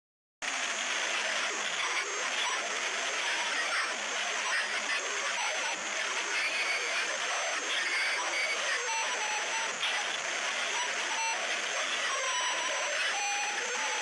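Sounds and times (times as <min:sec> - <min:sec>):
harsh crackling glitch static: 0:00.4 - 0:14.0.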